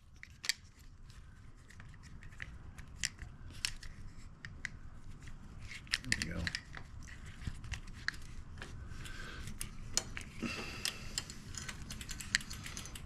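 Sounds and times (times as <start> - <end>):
metal bicycle parts clicking: 9.0 - 13.0.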